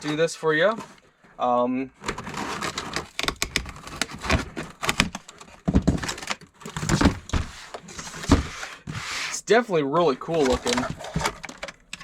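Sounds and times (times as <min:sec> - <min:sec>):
plastic and cardboard crinkling: 0:00.0 - 0:01.4, 0:02.0 - 0:09.4, 0:10.2 - 0:12.0
packaging clicks and knocks: 0:02.0 - 0:09.0, 0:10.3 - 0:12.0.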